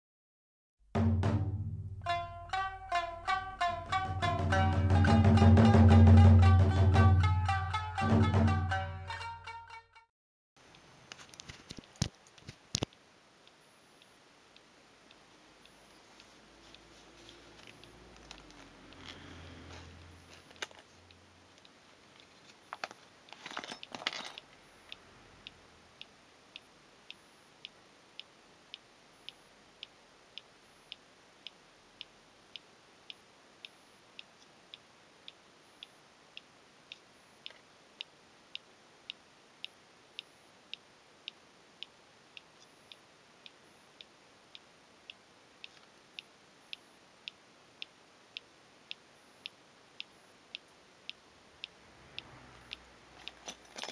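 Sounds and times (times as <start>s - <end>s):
faint regular ticking: 10.6s - 53.9s
rustle of handling: 15.9s - 21.0s.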